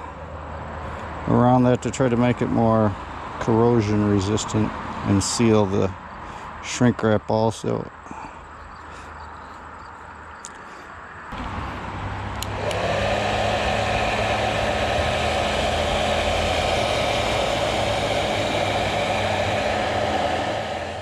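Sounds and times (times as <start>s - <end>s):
hot-air blower whirring: 12.3s - 21.0s.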